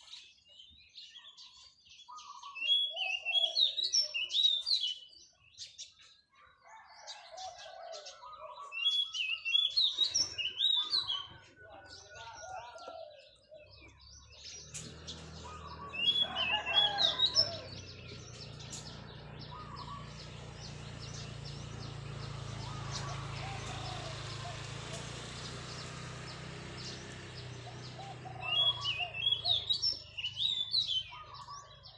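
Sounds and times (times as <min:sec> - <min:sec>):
small birds chirping: 0:00.0 - 0:31.9
dove cooing: 0:02.4 - 0:04.4, 0:06.7 - 0:14.1, 0:14.7 - 0:31.9
low motor hum: 0:13.7 - 0:31.9.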